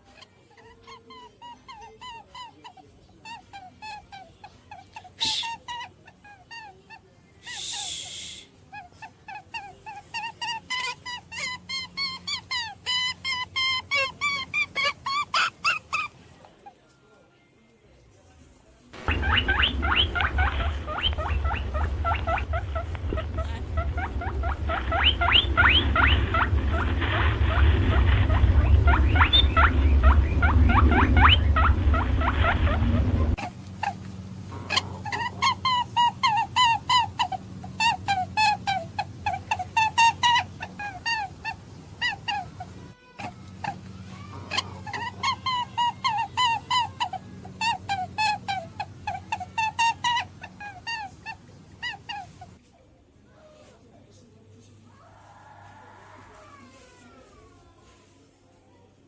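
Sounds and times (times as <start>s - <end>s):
small animal squeaky calls: 0.0s - 16.8s, 19.0s - 34.0s, 34.6s - 52.6s
hissing rustle: 19.0s - 34.7s
steady low hum: 19.0s - 52.6s.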